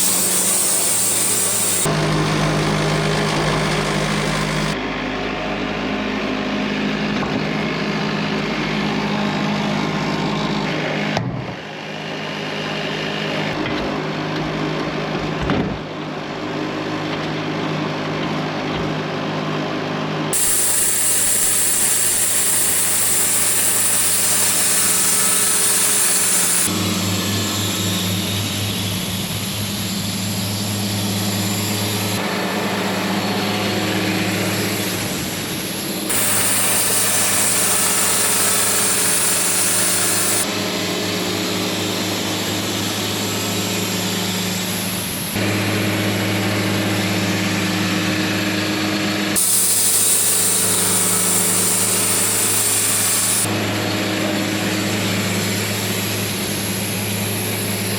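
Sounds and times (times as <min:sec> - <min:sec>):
saw blade cutting log: 0:00.0 - 0:04.8, 0:20.4 - 0:28.1, 0:36.1 - 0:42.4, 0:49.4 - 0:53.6
sawmill engine running: 0:00.0 - 0:15.3, 0:16.0 - 0:57.9.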